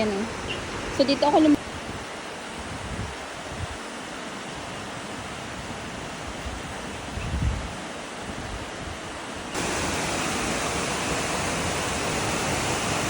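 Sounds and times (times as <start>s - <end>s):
wind thumps on microphone: 7.2s - 7.8s
waterfall roaring: 9.0s - 13.0s.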